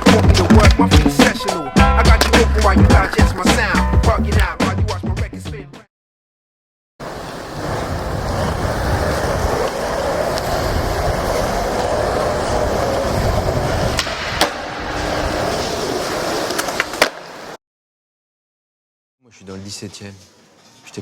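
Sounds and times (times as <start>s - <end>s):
skateboard clacks: 0.0s - 1.4s, 2.1s - 4.6s, 7.0s - 17.6s
skateboard wheels rolling on pavement: 0.0s - 4.8s, 7.0s - 17.6s.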